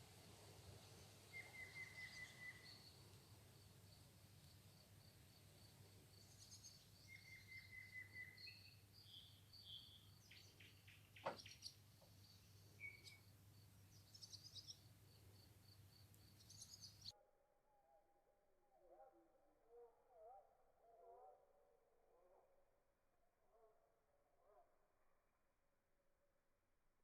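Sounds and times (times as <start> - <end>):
small birds chirping and trilling: 0.8 - 3.1, 6.1 - 17.1.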